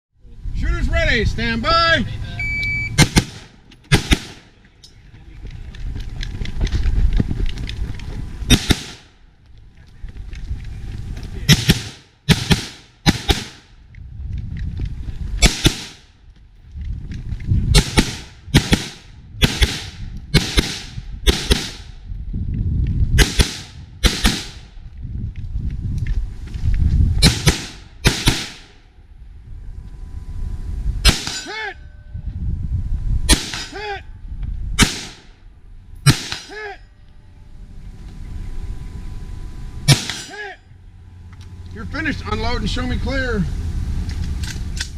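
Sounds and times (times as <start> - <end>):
low rumbling noise: 0.2 - 44.9
short ringing tone: 2.4 - 3.0
rifle shots: 3.0 - 4.5, 8.5 - 9.1, 11.5 - 13.7, 15.4 - 16.1, 17.8 - 21.9, 23.2 - 24.7, 27.2 - 28.8, 31.0 - 31.5, 33.3 - 33.8, 34.8 - 35.3, 36.0 - 36.6, 39.9 - 40.3.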